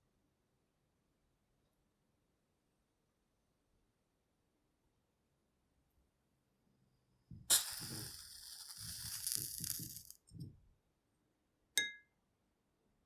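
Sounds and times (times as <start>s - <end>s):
match striking and hissing: 7.5s - 10.3s.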